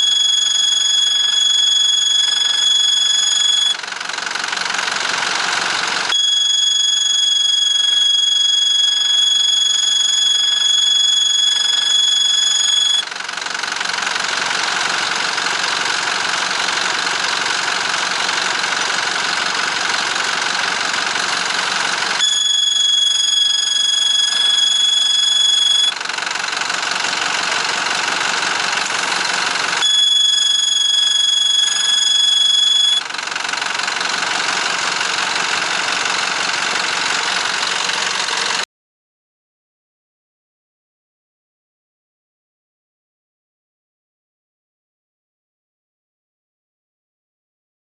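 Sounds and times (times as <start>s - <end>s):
high-pitched whistle: 0.0s - 3.8s, 6.1s - 13.1s, 22.2s - 26.0s, 29.8s - 33.0s
engine running: 0.0s - 38.7s.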